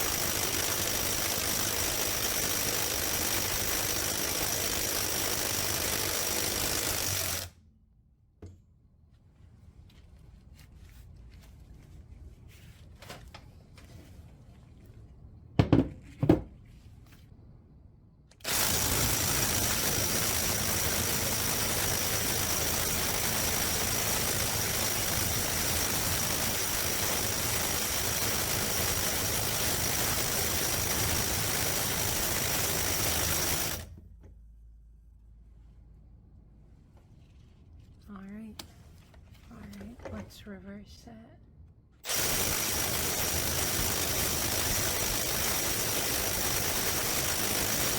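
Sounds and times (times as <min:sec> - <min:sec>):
impact wrench hammering: 0:00.0 - 0:07.5
tool knocks: 0:15.6 - 0:16.5.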